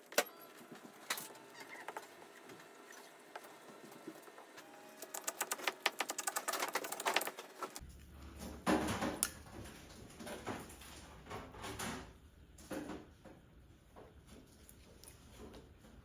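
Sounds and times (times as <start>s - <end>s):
knocks and rustles: 5.4s - 16.0s.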